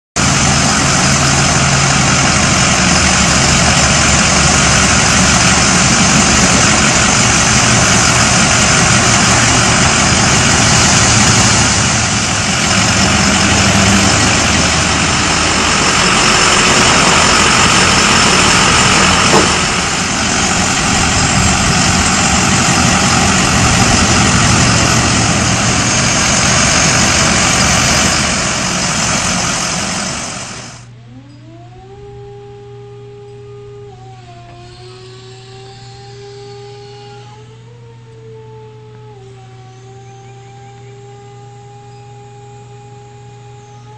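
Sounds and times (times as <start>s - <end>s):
truck engine idling: 0.2s - 31.0s.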